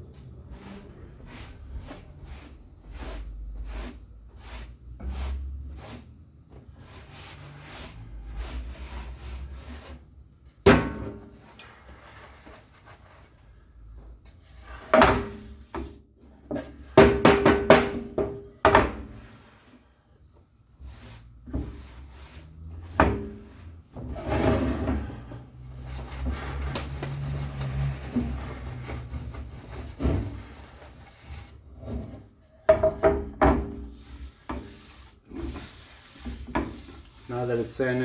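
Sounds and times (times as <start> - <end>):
sandpaper rubbing on wood: 0.5 - 6.1, 6.8 - 10.0, 33.8 - 38.0
wooden knocks and clatter: 32.0 - 33.8.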